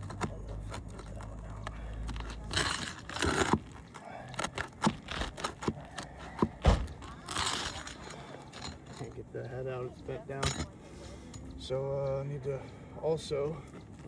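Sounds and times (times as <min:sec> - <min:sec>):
hand tool scraping shingles: 0:00.0 - 0:06.6.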